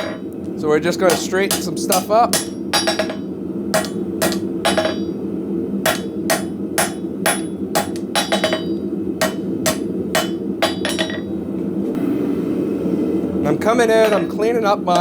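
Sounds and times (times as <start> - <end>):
hammer striking steel on anvil: 0.0 - 0.2, 1.1 - 5.2, 5.9 - 11.4, 14.0 - 14.4
steady low hum: 0.0 - 15.0.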